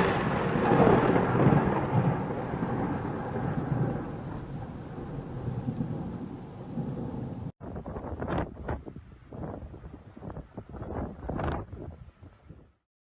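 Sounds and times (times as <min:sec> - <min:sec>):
rolling thunder: 0:00.0 - 0:07.5
rain: 0:00.0 - 0:07.6.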